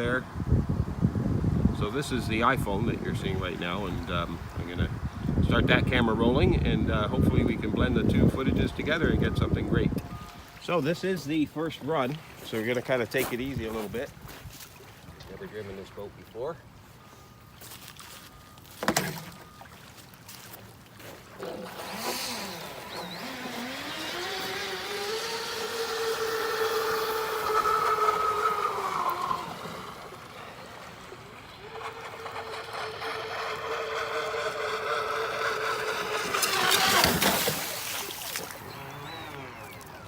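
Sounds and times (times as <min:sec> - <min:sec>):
electric motor whine: 0:01.7 - 0:11.8, 0:21.3 - 0:40.0.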